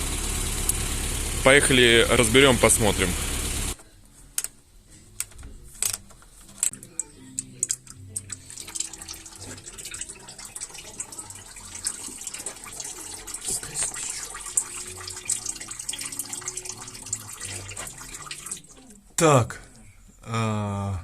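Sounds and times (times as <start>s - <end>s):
quiet background music: 3.8s - 21.0s
liquid running and dripping: 7.6s - 18.9s.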